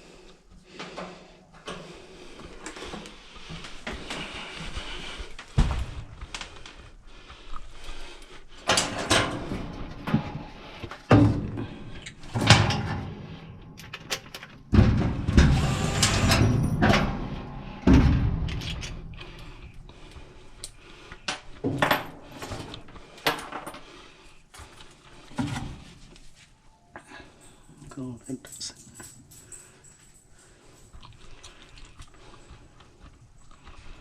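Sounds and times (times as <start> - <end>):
knocks clunks and scraping of parts: 8.6 - 23.9, 24.5 - 26.6.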